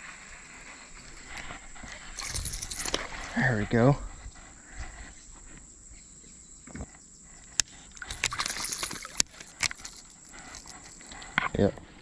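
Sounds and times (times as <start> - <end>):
brief rustle: 0.9 - 3.4.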